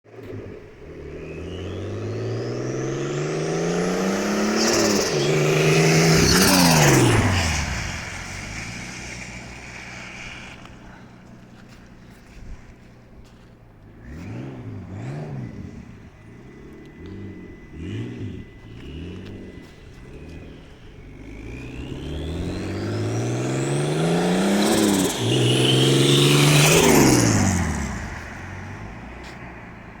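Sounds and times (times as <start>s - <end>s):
car engine accelerating: 0.1s - 30.0s
turbo whistle: 15.9s - 28.1s.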